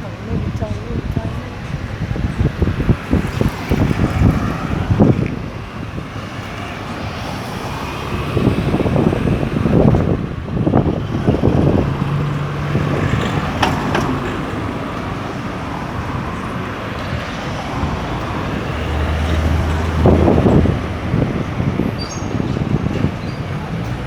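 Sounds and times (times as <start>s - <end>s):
car and bus engines passing: 0.0s - 24.0s
road noise rumble: 0.0s - 24.0s.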